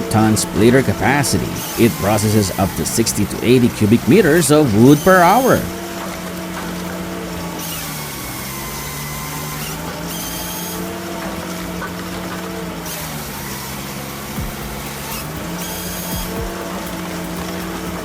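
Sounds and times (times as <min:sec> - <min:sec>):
firewood processor engine running: 0:00.0 - 0:18.0.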